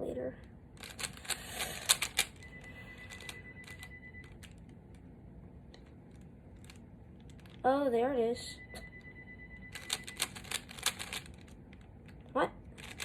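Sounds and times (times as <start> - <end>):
puzzle cube clicking: 0.8 - 4.8, 9.7 - 13.0.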